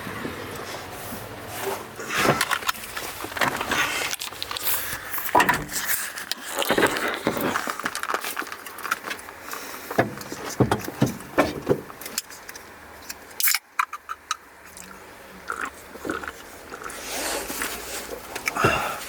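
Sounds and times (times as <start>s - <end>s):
tools knocking and clicking on car: 10.0s - 12.0s.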